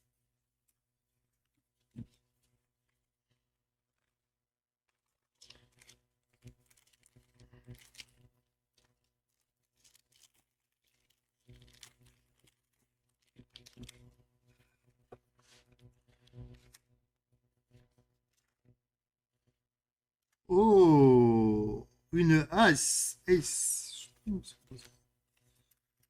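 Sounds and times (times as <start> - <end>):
foil wrapper crinkling and tearing: 4.9 - 14.0.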